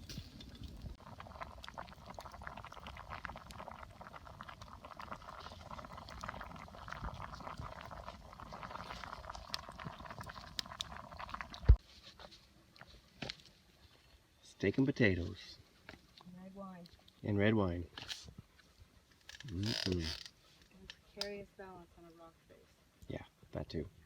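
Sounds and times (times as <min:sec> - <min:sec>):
food sizzling over campfire: 0:00.0 - 0:13.6, 0:17.2 - 0:21.6.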